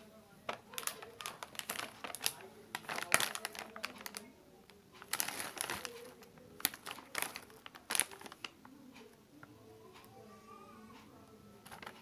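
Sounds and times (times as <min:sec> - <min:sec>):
wrapper crinkling: 0:00.5 - 0:04.3, 0:05.0 - 0:08.6, 0:11.6 - 0:12.0.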